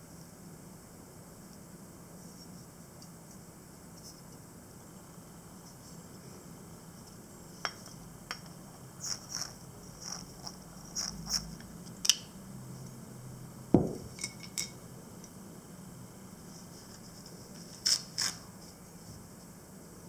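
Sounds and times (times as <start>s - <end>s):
knock with low ring: 13.8s - 14.1s.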